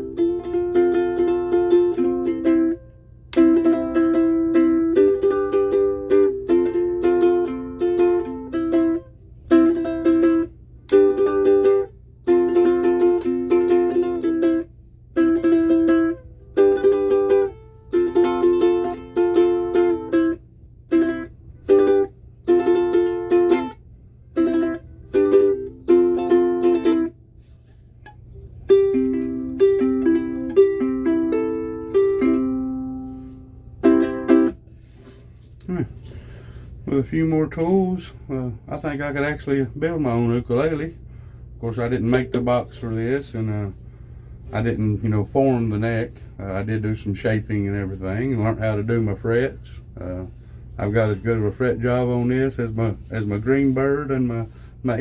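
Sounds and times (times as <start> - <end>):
ukulele picked notes: 0.0 - 27.2, 28.0 - 34.9, 41.7 - 42.9
ukulele strummed chords: 0.0 - 27.2, 28.0 - 41.0, 41.7 - 43.8.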